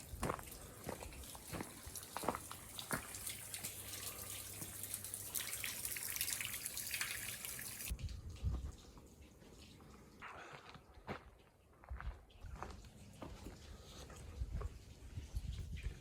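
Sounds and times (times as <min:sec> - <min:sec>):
water running: 0:00.0 - 0:10.2.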